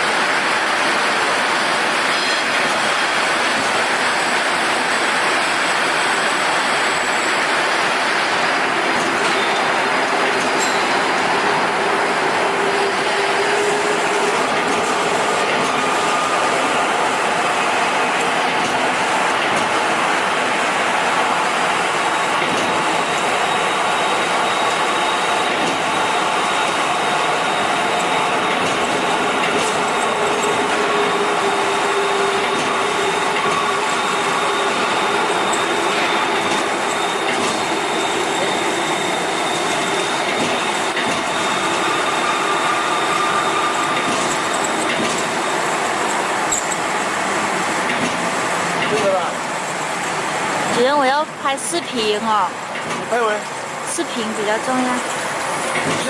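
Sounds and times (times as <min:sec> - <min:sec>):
polishing machine rushing noise: 0:09.7 - 0:18.1, 0:22.9 - 0:47.6.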